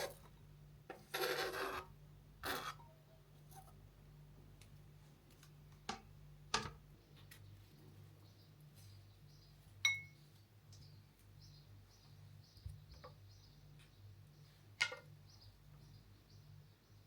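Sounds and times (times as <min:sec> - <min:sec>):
rasping scrape: 0:00.9 - 0:02.8.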